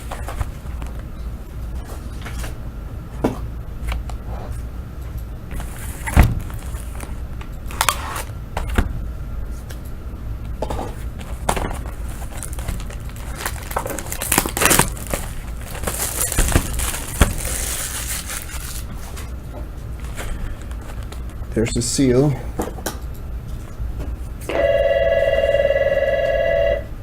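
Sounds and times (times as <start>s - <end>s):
plastic shrink-wrap crinkling: 5.6s - 8.2s, 11.3s - 19.3s.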